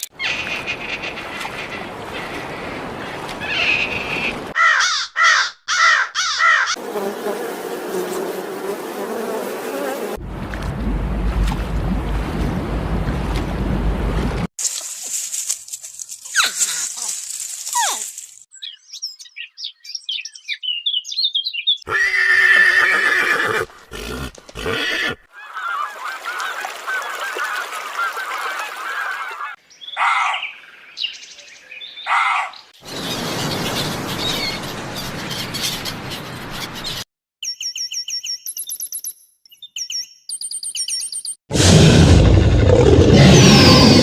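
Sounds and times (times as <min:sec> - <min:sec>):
bird calls: 0:00.2 - 0:06.8, 0:25.3 - 0:41.3.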